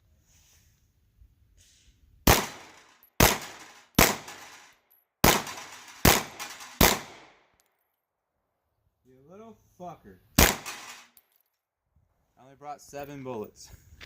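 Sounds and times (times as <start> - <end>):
pistol shots with echo: 2.3 - 4.6, 5.2 - 7.4, 10.4 - 11.1.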